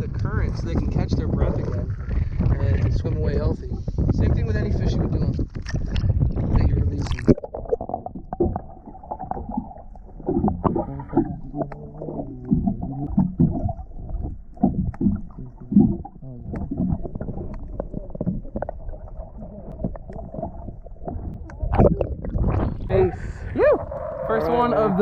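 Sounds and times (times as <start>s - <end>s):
water sloshing around boat: 5.4s - 25.0s.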